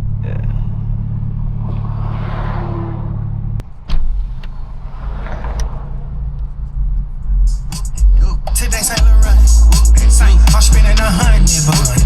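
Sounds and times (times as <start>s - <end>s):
turbocharged car engine droning: 0.0s - 12.0s.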